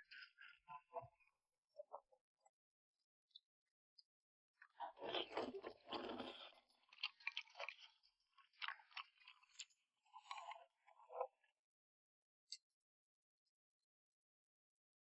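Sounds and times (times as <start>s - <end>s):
person chewing: 6.9s - 7.8s.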